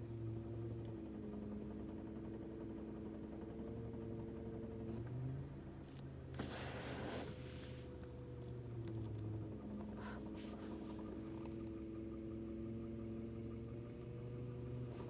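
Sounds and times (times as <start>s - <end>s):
car engine low hum: 0.0s - 15.0s.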